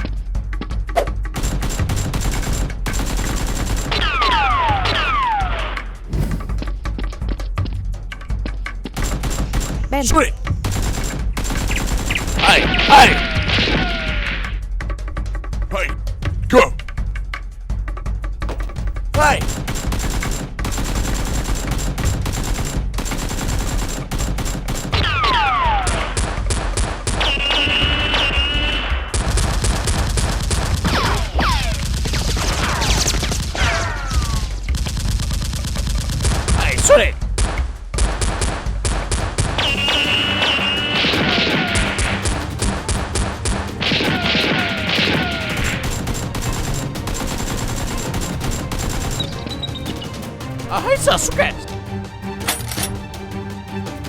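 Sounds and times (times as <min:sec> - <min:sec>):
background music: 0:00.0 - 0:54.0
rapid automatic gunfire: 0:01.4 - 0:04.5, 0:09.0 - 0:09.9, 0:10.6 - 0:13.5, 0:19.2 - 0:28.4, 0:29.1 - 0:33.6, 0:34.2 - 0:50.1
whistling tones sliding downward: 0:39.6 - 0:41.0
toy blaster gunfire: 0:43.9 - 0:49.3.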